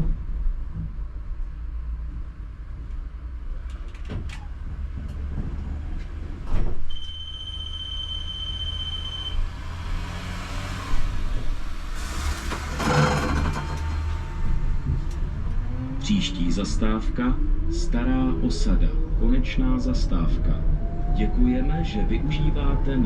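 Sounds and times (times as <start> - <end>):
tram rumbling: 0.0 - 23.0
rushing noise: 9.2 - 19.2.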